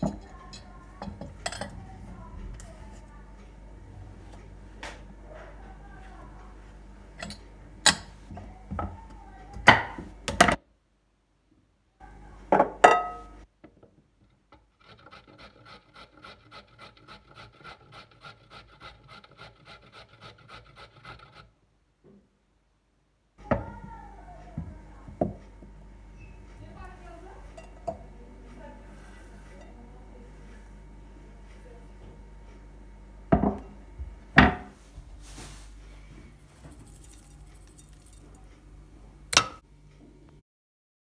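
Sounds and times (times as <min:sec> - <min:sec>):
rhythmic scraping: 0:36.1 - 0:38.5
utensils knocking and clicking: 0:39.4 - 0:39.6.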